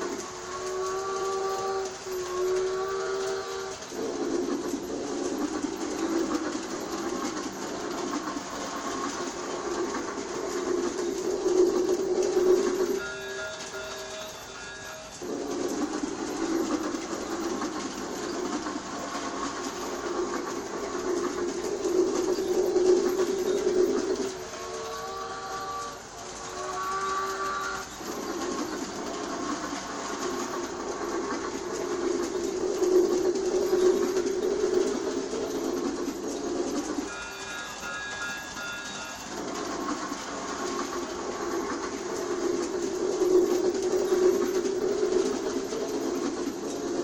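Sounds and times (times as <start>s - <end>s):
toy train whistle: 0.0s - 4.4s, 12.4s - 15.6s, 23.1s - 28.6s, 37.0s - 41.8s
toy train rolling hum: 0.0s - 47.0s.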